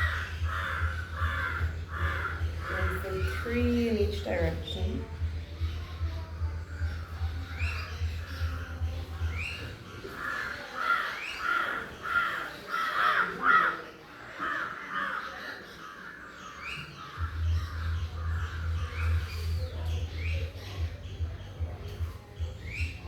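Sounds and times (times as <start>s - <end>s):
crows cawing: 0.0s - 4.2s, 6.8s - 19.4s.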